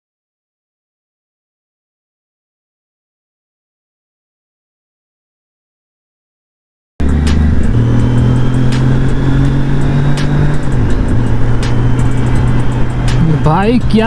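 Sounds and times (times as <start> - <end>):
motorcycle engine running: 7.0 - 14.0.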